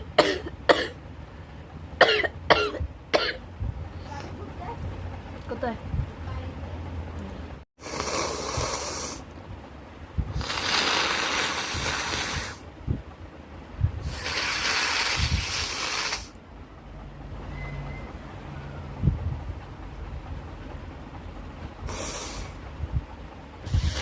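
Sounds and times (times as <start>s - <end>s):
person blowing nose: 7.8s - 9.2s, 10.3s - 12.6s, 14.0s - 16.4s, 21.9s - 22.6s, 23.7s - 24.0s.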